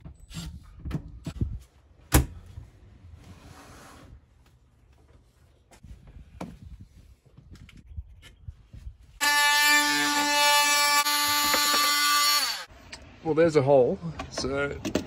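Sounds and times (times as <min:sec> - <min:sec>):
power drill whining: 0:09.2 - 0:12.7.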